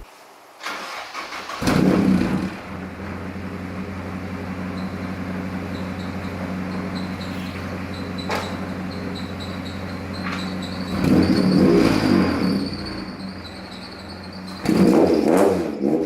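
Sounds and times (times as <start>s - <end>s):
car engine cranking: 0.6s - 16.0s
engine revving then idling: 1.5s - 13.7s.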